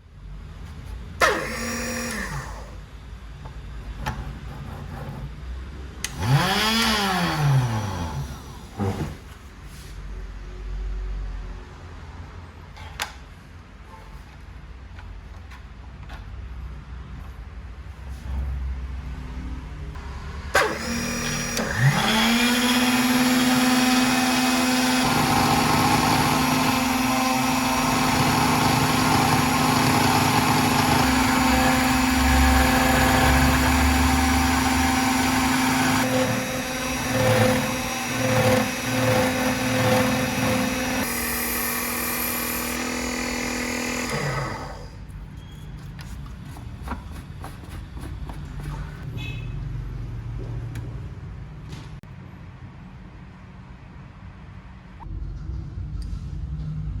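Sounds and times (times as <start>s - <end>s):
tool working roughly: 1.2s - 2.8s, 20.6s - 45.0s
small electric motor whining: 20.6s - 45.0s.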